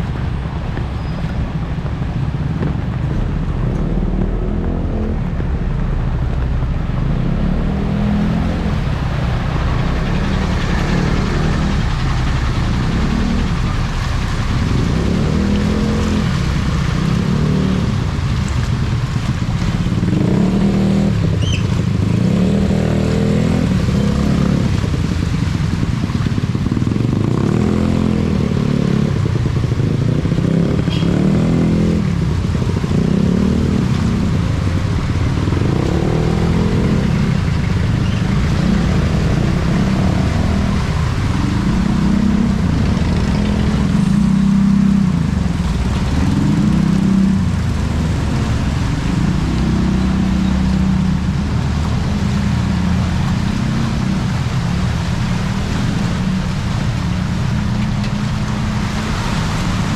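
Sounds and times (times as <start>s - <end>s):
deep low rumble: 0.0s - 26.5s
heavy rain falling: 0.0s - 59.9s.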